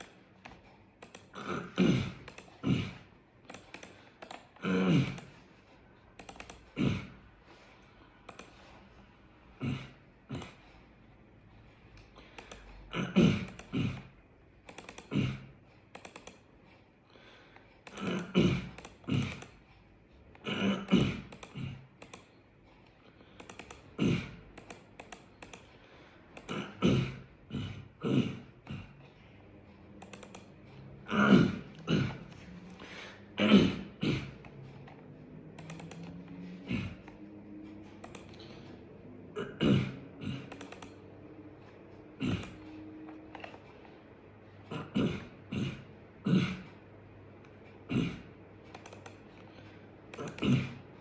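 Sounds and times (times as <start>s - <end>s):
man clearing his throat: 1.3s - 3.2s, 4.6s - 5.4s, 6.7s - 7.3s, 9.5s - 10.6s, 12.8s - 14.2s, 15.0s - 15.6s, 17.9s - 19.5s, 20.4s - 21.9s, 23.9s - 24.5s, 26.5s - 29.1s, 30.9s - 34.7s, 36.0s - 37.6s, 38.4s - 40.6s, 42.1s - 43.1s, 44.7s - 46.8s, 47.8s - 48.4s, 50.2s - 50.9s.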